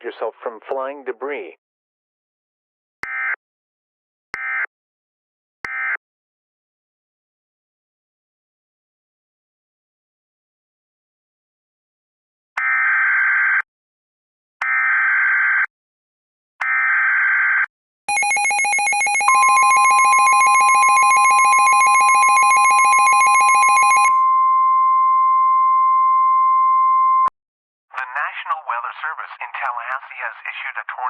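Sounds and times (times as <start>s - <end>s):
harsh buzzing attention alarm: 18.1s - 24.5s
steady high warning tone: 18.1s - 24.7s.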